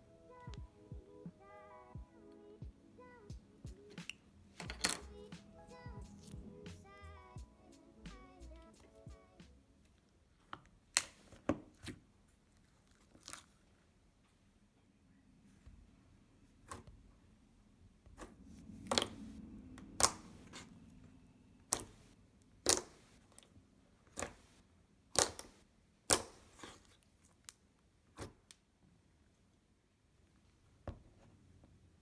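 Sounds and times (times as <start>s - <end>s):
slime popping and clicking: 19.9s - 20.6s, 21.7s - 23.0s, 25.2s - 26.6s.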